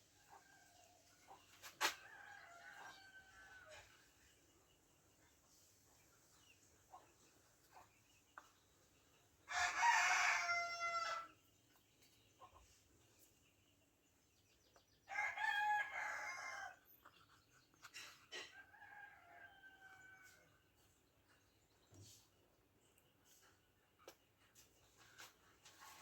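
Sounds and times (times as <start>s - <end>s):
rooster crowing: 2.1s - 3.9s, 9.5s - 11.3s, 15.1s - 16.8s, 18.6s - 20.5s.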